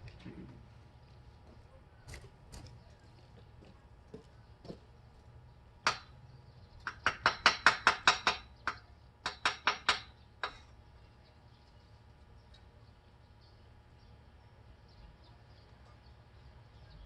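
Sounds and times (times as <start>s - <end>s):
hammer striking metal: 5.8s - 6.1s, 6.9s - 10.7s.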